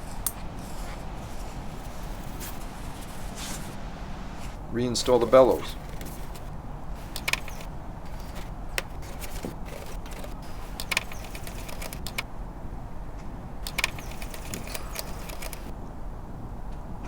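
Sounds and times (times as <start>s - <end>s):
tools clicking and knocking: 5.1s - 12.2s, 13.7s - 15.7s.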